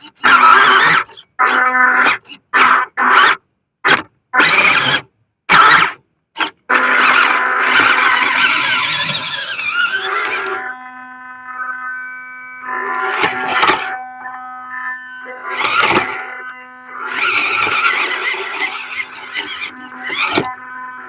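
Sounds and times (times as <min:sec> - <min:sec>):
electric motor whine: 0:06.7 - 0:21.0.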